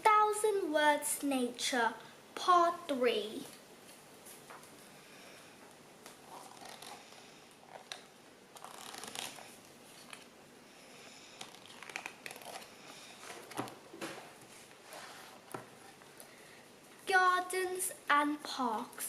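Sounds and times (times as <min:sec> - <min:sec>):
book pages turning: 0:06.0 - 0:10.3, 0:11.4 - 0:15.9.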